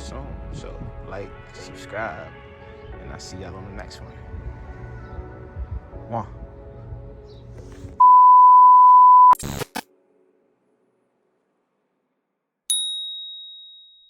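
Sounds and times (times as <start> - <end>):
loud steady electronic beep: 8.0 - 9.4
static crackle clicks: 9.3 - 9.9.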